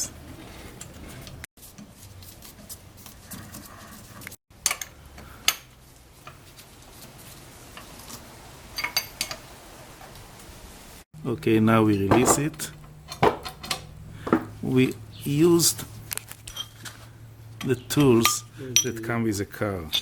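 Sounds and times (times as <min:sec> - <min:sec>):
metal tools clinking: 0:08.8 - 0:09.4, 0:16.4 - 0:16.9, 0:17.6 - 0:19.1.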